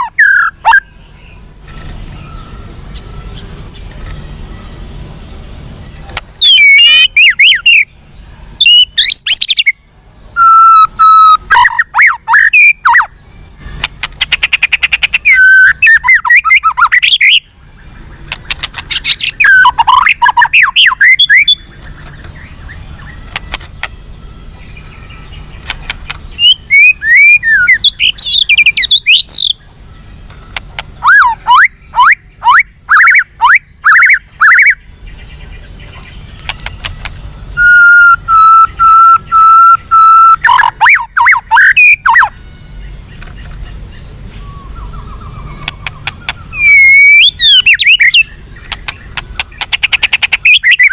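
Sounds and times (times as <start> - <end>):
bird singing whistled phrases: 0.0 - 1.4, 6.4 - 7.9, 8.6 - 9.8, 10.4 - 18.2, 18.9 - 25.5, 26.3 - 29.6, 31.0 - 35.4, 37.5 - 43.0, 44.4 - 50.9
bird rapid trill: 0.0 - 8.0, 8.6 - 9.8, 10.4 - 50.9.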